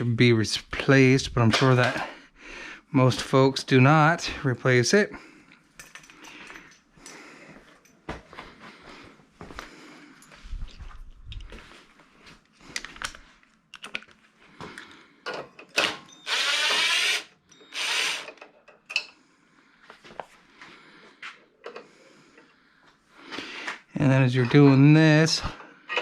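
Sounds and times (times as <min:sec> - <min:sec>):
metal tools clinking: 0:05.8 - 0:07.2
power tool bursts: 0:15.8 - 0:18.4.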